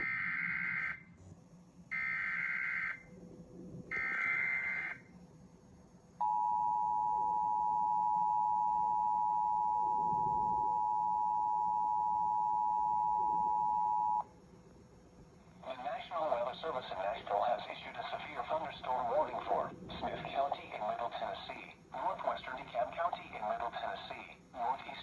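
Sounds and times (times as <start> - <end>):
steady two-tone attention signal: 6.2 - 14.3
warbling digital data tones: 7.0 - 14.2.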